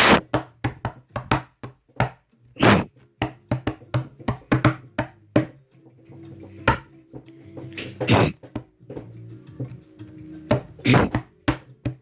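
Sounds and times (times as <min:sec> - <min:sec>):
hissy bursts: 0:00.0 - 0:00.2
sharp knocks and taps: 0:00.0 - 0:12.0.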